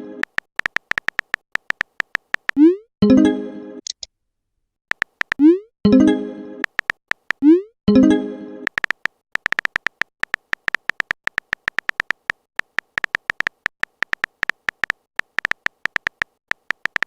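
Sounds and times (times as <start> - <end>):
typing clicks: 0.2 - 2.7, 4.9 - 5.6, 6.6 - 7.5, 8.7 - 17.0.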